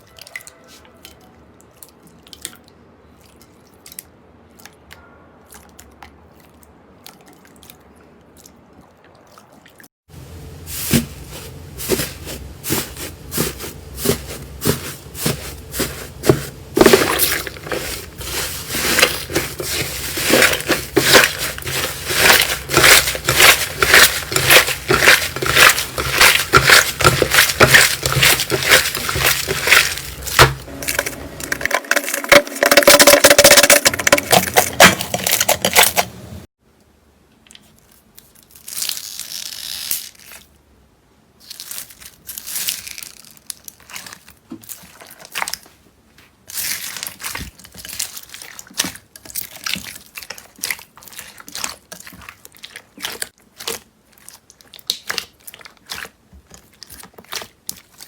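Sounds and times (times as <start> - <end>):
slime crackling and popping: 16.6 - 36.0.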